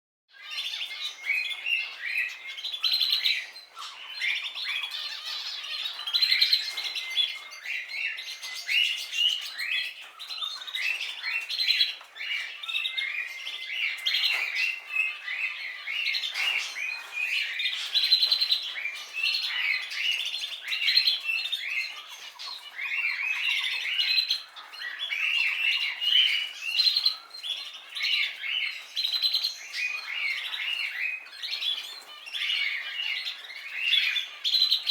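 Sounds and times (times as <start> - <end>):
canary singing: 0.4 - 34.9.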